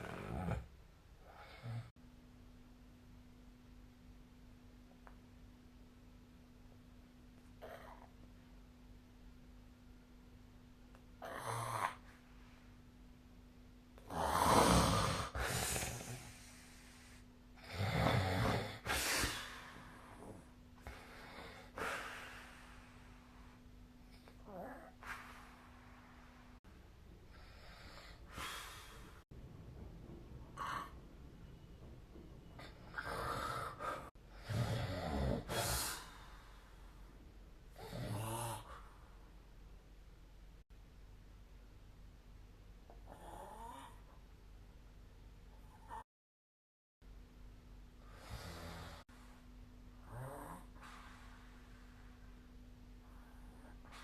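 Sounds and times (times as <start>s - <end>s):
person snoring: 0.0s - 1.9s, 11.2s - 12.1s, 14.0s - 23.4s, 24.1s - 25.8s, 30.6s - 31.0s, 32.6s - 36.5s, 37.7s - 39.0s, 48.1s - 49.1s, 50.0s - 50.9s.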